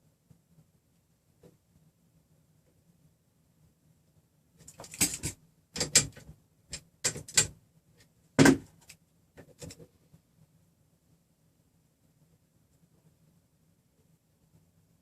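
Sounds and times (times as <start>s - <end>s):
metal parts clicking and scraping: 4.6s - 7.5s.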